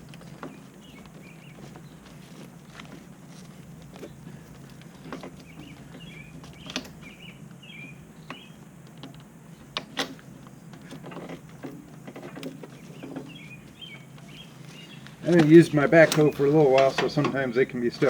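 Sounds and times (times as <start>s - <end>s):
bird chirping: 0.0s - 2.4s, 3.9s - 8.7s, 12.6s - 18.0s
steady low hum: 0.0s - 18.0s
hose couplers clicking and knocking: 3.8s - 7.2s, 8.2s - 14.4s, 15.0s - 18.0s.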